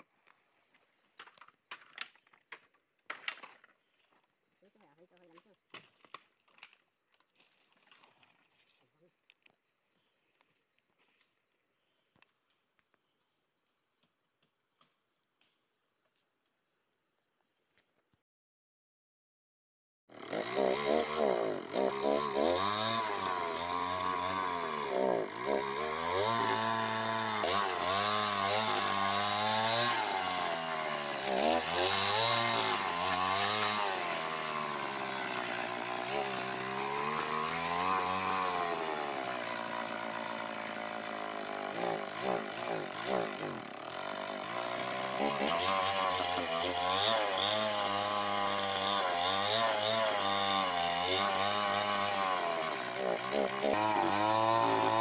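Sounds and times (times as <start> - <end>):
chainsaw revving and cutting: 20.1 - 55.0.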